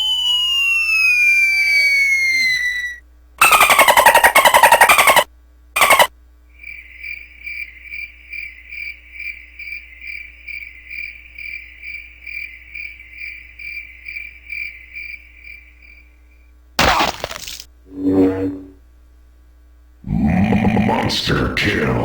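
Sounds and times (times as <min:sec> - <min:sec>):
cricket chirping: 0:05.8 - 0:16.6.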